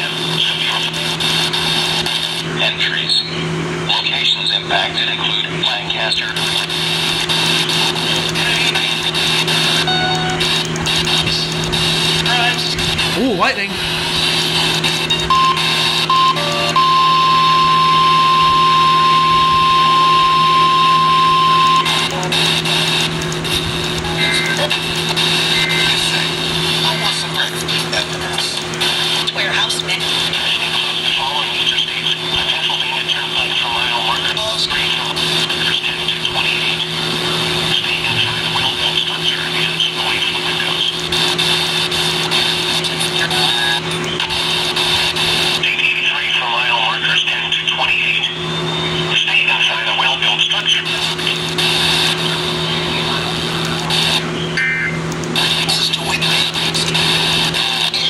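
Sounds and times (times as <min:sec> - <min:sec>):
radio static: 0:00.0 - 0:58.0
steady hum: 0:00.0 - 0:58.0
high warning alarm tone: 0:08.3 - 0:27.3.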